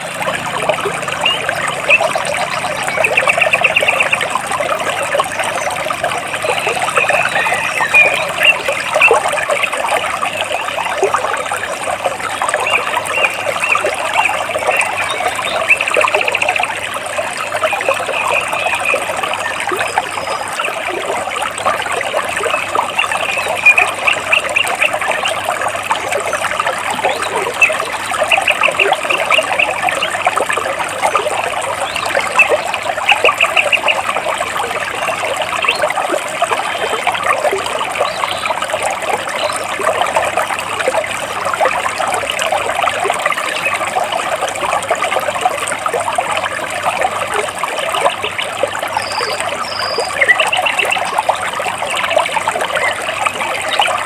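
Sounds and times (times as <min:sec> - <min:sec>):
birds chirping: 0:00.0 - 0:11.0, 0:12.5 - 0:21.2, 0:22.0 - 0:30.4, 0:31.0 - 0:38.6, 0:48.0 - 0:54.0
water trickling between rocks: 0:00.0 - 0:54.0.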